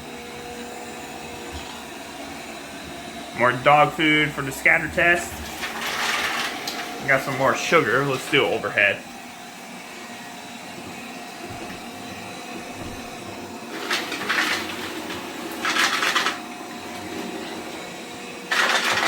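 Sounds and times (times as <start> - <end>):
robot vacuum motor hum: 0.0 - 19.0.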